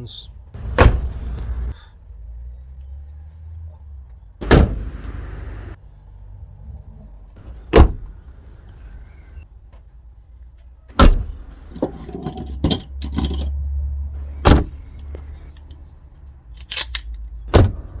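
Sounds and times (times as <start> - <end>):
car door slamming: 0.7 - 1.1, 4.4 - 4.8, 7.7 - 8.0, 11.0 - 11.9, 14.4 - 14.8, 17.5 - 17.8.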